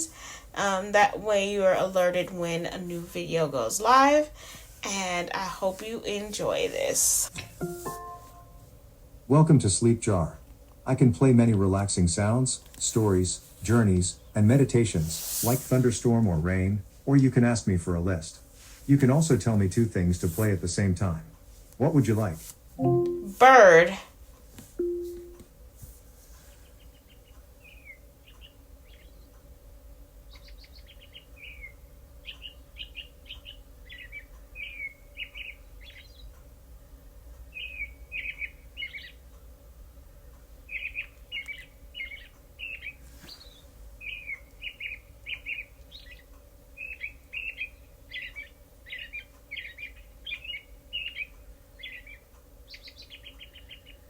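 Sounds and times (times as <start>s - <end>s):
faint steady hum: 0.0s - 54.0s
birds chirping: 9.3s - 23.7s, 24.8s - 25.4s, 26.5s - 29.4s, 30.2s - 36.4s, 37.4s - 39.4s, 40.2s - 54.0s.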